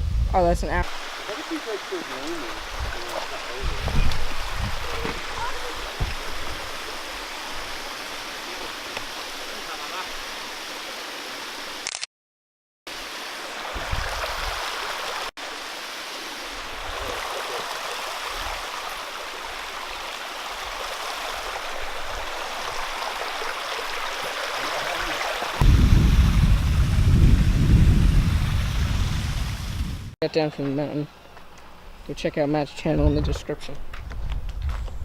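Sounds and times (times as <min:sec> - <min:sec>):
waterfall rushing: 0:00.8 - 0:11.8, 0:12.9 - 0:27.1.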